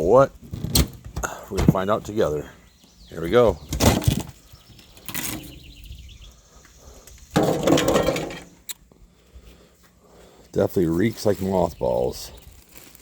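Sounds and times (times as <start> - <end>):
metal can scraping rustle: 5.0 - 5.7, 7.4 - 8.6.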